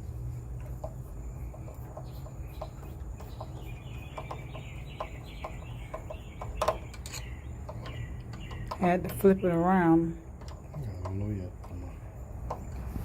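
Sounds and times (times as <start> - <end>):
steady low hum: 0.0 - 13.0
clicks and taps of lock parts: 1.6 - 9.2, 10.3 - 11.8
high repeated chirping: 2.0 - 10.0.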